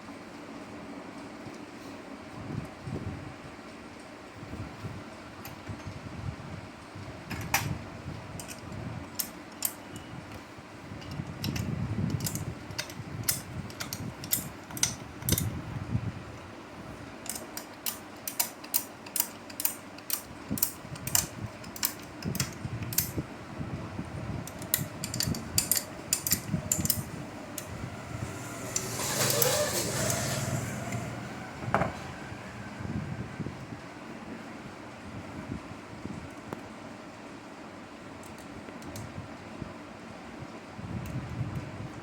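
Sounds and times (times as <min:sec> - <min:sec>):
metal tools clinking: 0:24.5 - 0:31.0.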